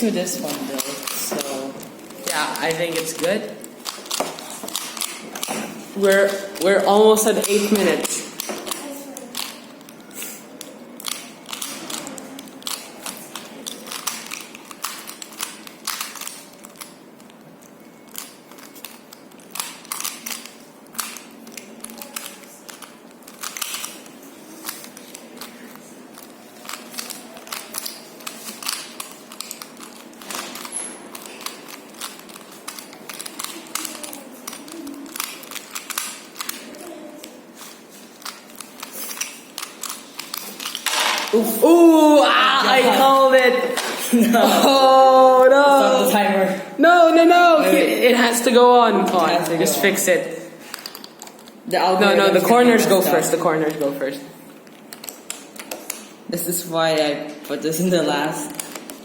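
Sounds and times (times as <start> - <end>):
puzzle cube plastic clicks: 0.3 - 37.4, 38.1 - 41.3, 50.7 - 51.6.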